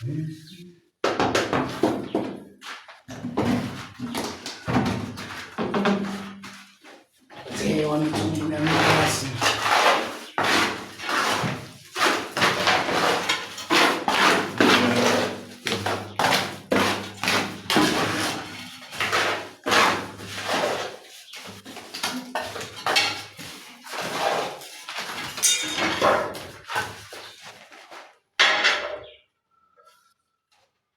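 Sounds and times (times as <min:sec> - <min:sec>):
tools clattering and scraping: 0:07.6 - 0:29.1.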